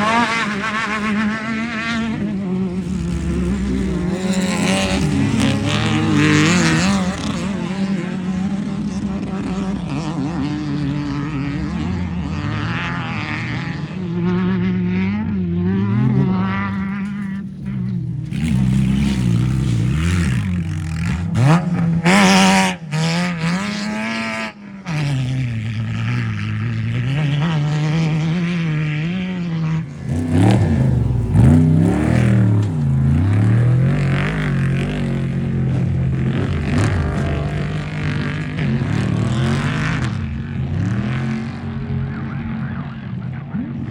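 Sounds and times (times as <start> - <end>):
race vehicle engines revving: 0.0 - 43.9.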